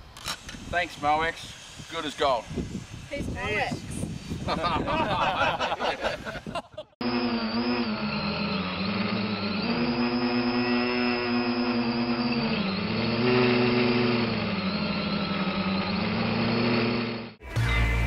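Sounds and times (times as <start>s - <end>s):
small engine running: 7.0s - 18.0s.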